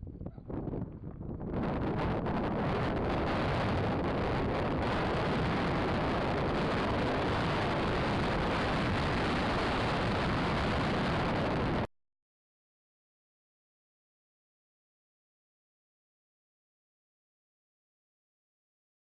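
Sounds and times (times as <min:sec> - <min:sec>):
wind rushing on microphone: 0:00.0 - 0:11.9.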